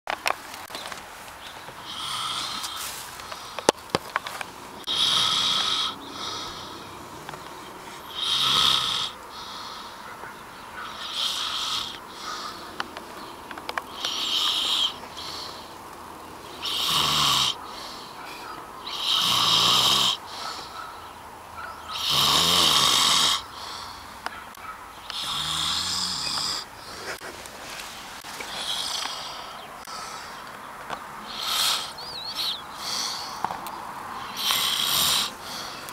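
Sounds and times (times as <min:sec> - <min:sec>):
man snoring: 0:01.8 - 0:02.9, 0:04.8 - 0:07.3, 0:08.0 - 0:09.8, 0:10.9 - 0:12.7, 0:13.9 - 0:15.7, 0:16.6 - 0:17.8, 0:18.9 - 0:20.3, 0:21.9 - 0:24.0, 0:25.1 - 0:26.7, 0:28.5 - 0:30.0, 0:31.3 - 0:33.2, 0:34.3 - 0:35.6.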